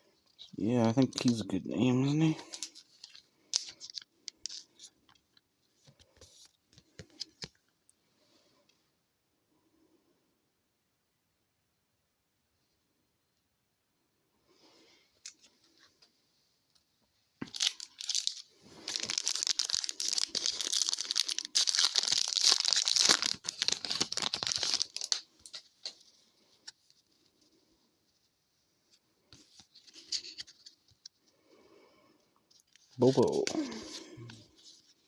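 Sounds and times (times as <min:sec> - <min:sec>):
wrapper tearing and crinkling: 0:17.4 - 0:26.0.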